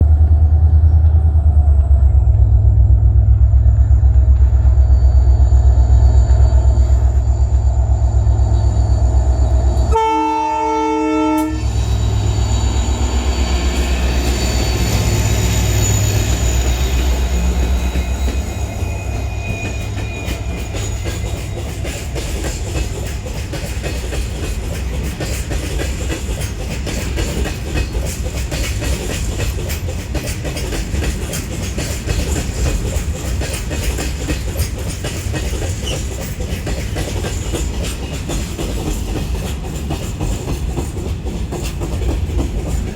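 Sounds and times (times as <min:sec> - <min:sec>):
locomotive engine rumble: 0:00.0 - 0:42.9
train wheels clacking on rails: 0:00.0 - 0:42.9
train horn blast: 0:09.8 - 0:12.5.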